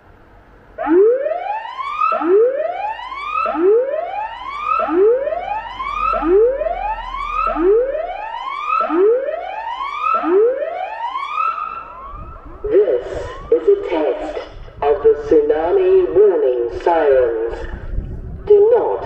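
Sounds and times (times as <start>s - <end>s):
warning siren rising whoops: 0.8s - 13.7s.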